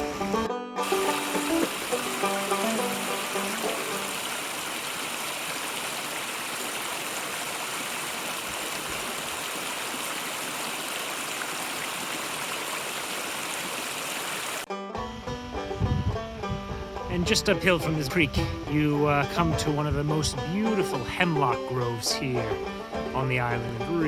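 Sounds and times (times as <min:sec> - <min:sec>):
plucked banjo music: 0:00.0 - 0:04.2, 0:14.7 - 0:24.0
creek water rushing: 0:00.0 - 0:14.7, 0:20.6 - 0:24.0.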